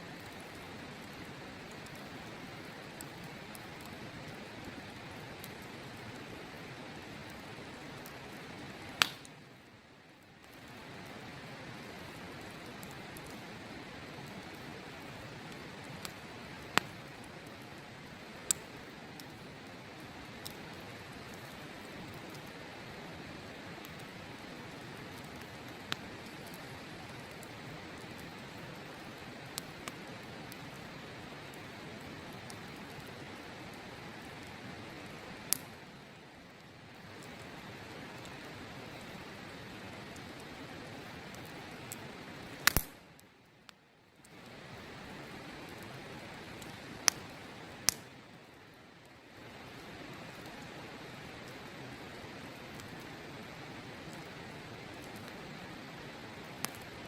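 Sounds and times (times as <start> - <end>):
wood fire crackling: 0.0 - 57.0
fire popping: 0.1 - 57.0
sharp pop from fire: 9.0 - 9.3, 42.6 - 43.0.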